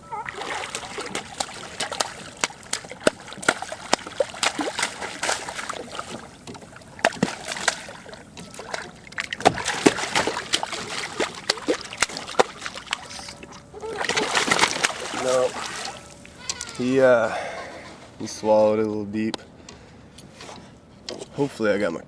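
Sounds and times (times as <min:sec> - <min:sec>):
water splashing around kayak: 0:00.2 - 0:16.2.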